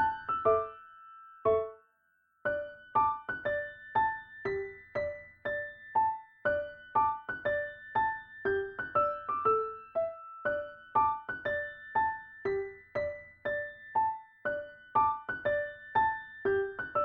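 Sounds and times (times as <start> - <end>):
piano music: 0.0 - 1.8, 2.5 - 17.0.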